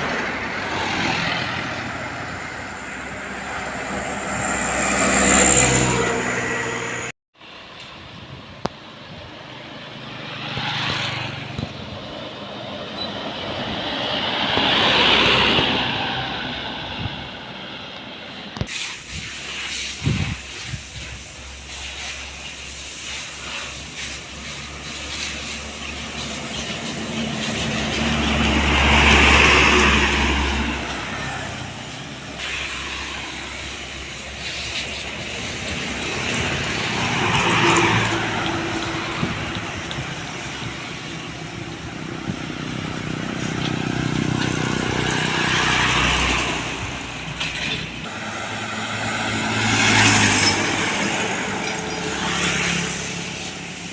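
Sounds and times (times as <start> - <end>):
heavy vehicles passing: 0.0 - 18.6, 20.0 - 53.9.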